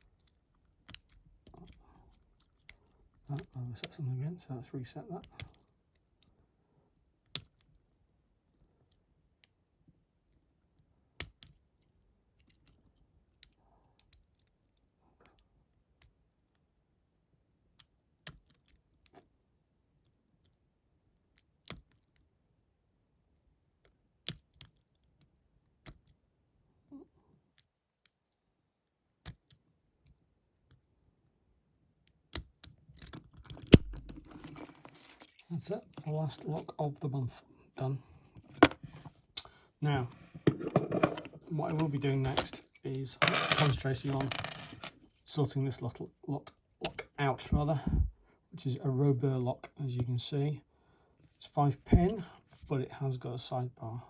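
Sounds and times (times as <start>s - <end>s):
lock pick clicking in padlock: 32.3s - 35.4s
metal rattling: 33.5s - 36.6s.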